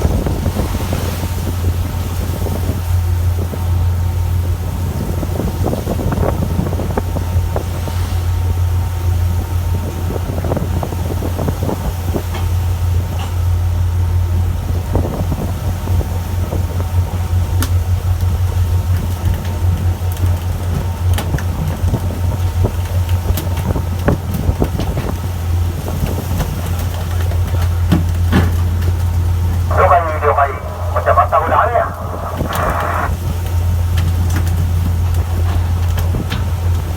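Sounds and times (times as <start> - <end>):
boat engine droning: 28.8 - 36.9.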